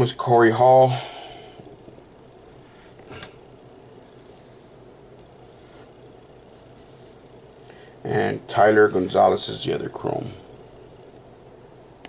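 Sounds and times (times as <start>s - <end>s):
faint steady hum: 0.0s - 12.0s
trading cards rubbing: 4.0s - 7.2s.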